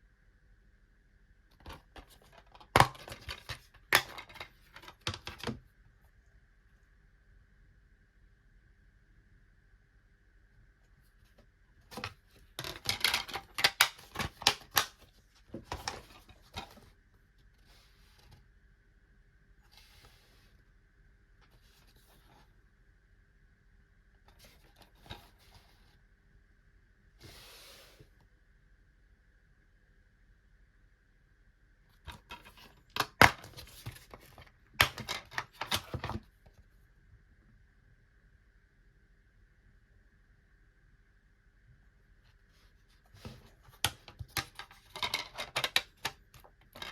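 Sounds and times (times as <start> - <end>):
plastic cases clicking and clacking: 1.6 - 5.6, 11.9 - 16.8, 32.1 - 36.2, 43.2 - 46.9.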